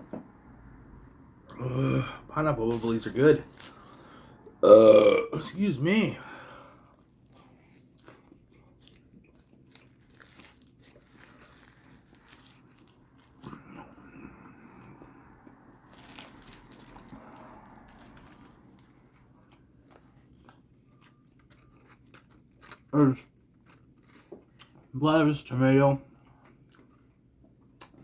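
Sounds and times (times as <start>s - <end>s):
person chewing a sandwich: 6.2s - 24.9s, 26.1s - 28.0s.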